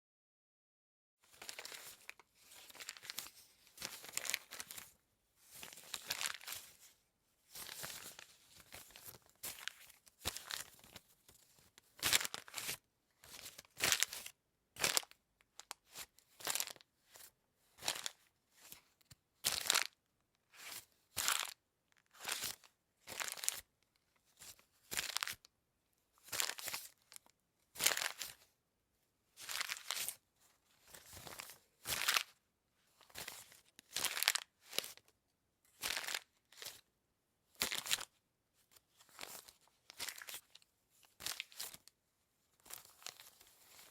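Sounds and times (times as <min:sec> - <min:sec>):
paper crumpling by hand: 0:01.3 - 0:04.9, 0:05.5 - 0:06.9, 0:12.0 - 0:17.2, 0:17.8 - 0:18.8, 0:19.5 - 0:20.0, 0:22.2 - 0:23.6, 0:24.9 - 0:25.3, 0:26.3 - 0:28.4, 0:29.4 - 0:30.2, 0:33.2 - 0:35.1, 0:35.8 - 0:36.8, 0:39.1 - 0:40.6, 0:41.2 - 0:41.9, 0:42.6 - 0:43.9.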